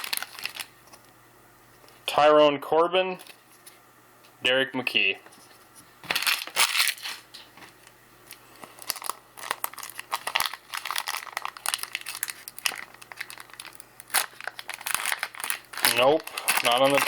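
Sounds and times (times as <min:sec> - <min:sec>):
wrapper crinkling and tearing: 0:00.0 - 0:00.7, 0:06.0 - 0:07.4, 0:08.3 - 0:17.0.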